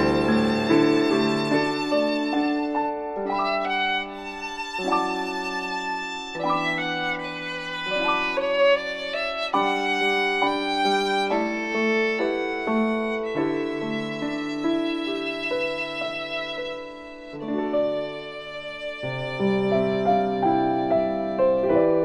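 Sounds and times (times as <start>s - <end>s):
low sustained string notes: 0.0s - 2.0s
violin melody: 0.0s - 22.0s.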